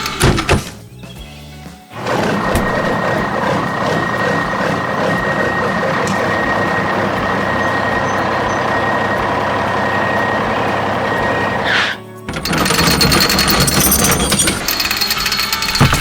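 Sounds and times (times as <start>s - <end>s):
heavy machine engine whining: 1.9s - 16.0s.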